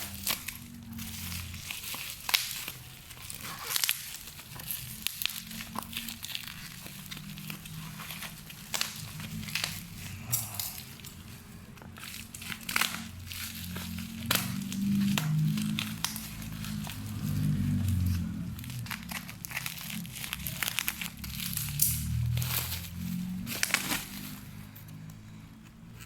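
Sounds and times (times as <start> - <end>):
gift packaging crinkling and tearing: 0.0 - 26.0.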